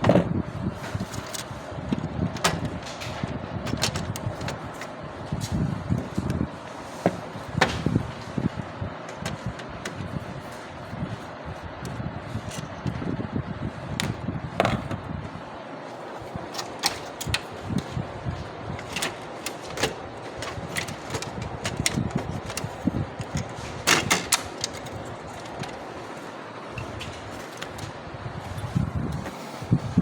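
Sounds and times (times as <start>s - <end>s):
printer clicks and knocks: 2.0s - 4.9s.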